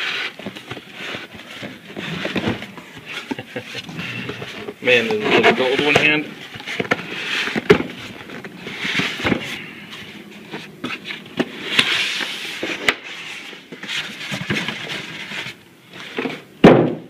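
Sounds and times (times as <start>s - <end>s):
cardboard box rustling and scraping: 0.0s - 16.4s.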